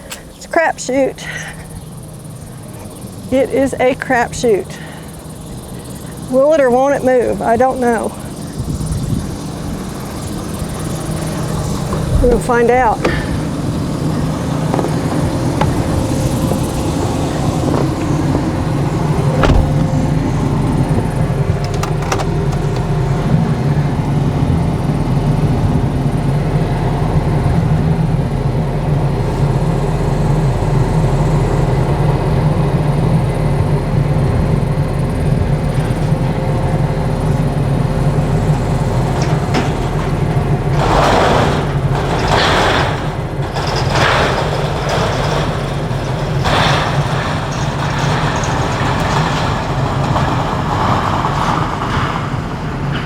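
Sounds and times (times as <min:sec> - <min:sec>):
truck engine running: 0:00.0 - 0:53.0
sharp knocks: 0:11.9 - 0:22.9.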